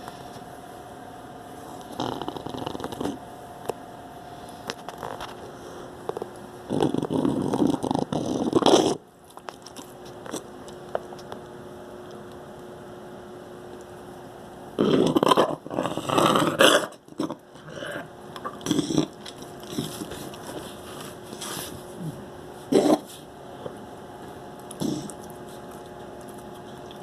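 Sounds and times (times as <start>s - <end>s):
dog coughing: 14.8s - 20.0s, 22.0s - 23.1s, 24.8s - 25.2s.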